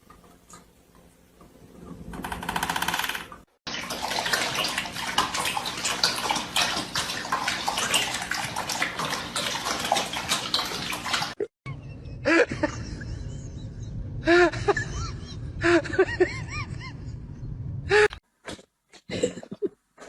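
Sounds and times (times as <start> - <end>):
water splashing in bathtub: 3.7 - 11.5
low hum: 11.7 - 18.0.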